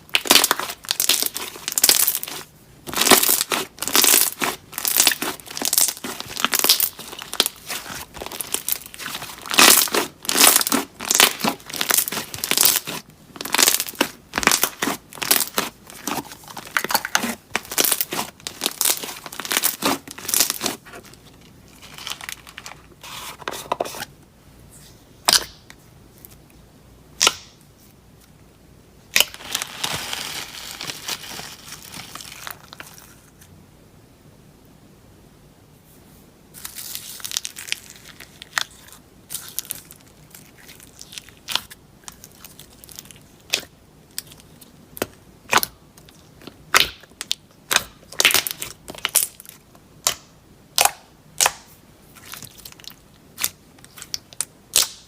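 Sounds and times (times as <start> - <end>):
slime crackling and popping: 0.0 - 21.1, 36.6 - 55.0.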